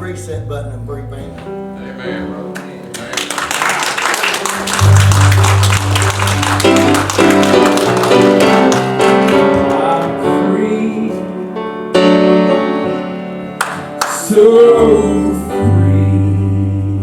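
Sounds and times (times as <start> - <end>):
gospel piano and keyboard: 0.0 - 17.0
deep bass note: 4.8 - 7.6.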